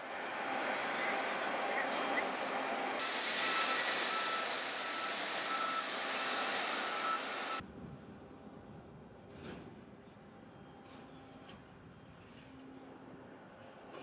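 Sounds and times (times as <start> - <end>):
loud steady noise rush: 0.0 - 7.6
reversing alarm beeping: 3.0 - 7.6.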